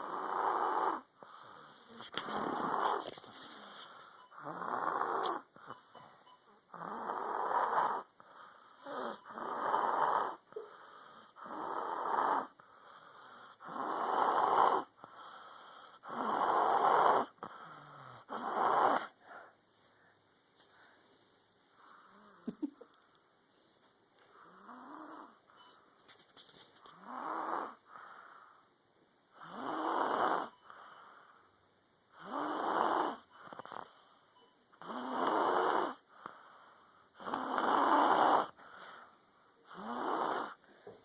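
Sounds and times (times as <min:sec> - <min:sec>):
child snoring loudly: 0:00.0 - 0:03.1, 0:04.4 - 0:05.5, 0:06.7 - 0:08.1, 0:08.8 - 0:10.5, 0:11.3 - 0:12.6, 0:13.4 - 0:15.0, 0:16.0 - 0:19.2, 0:27.0 - 0:27.8, 0:29.4 - 0:30.6, 0:32.2 - 0:33.9, 0:34.8 - 0:36.1, 0:37.2 - 0:38.6, 0:39.6 - 0:40.6.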